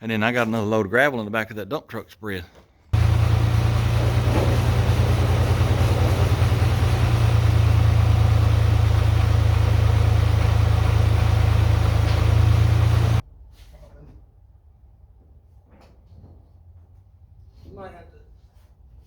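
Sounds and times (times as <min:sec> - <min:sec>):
truck engine running: 0:03.0 - 0:13.2.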